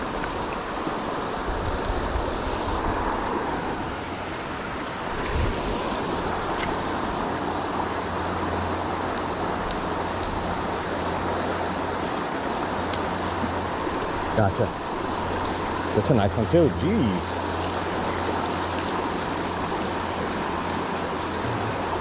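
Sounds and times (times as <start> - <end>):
wind rumble on microphone: 0.0 - 15.9
creek water rushing: 0.0 - 22.0.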